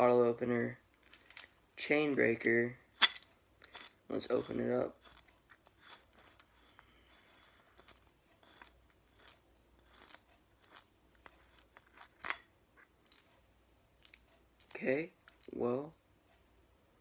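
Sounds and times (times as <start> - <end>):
multi-tool clicks and scraping: 3.0 - 13.4.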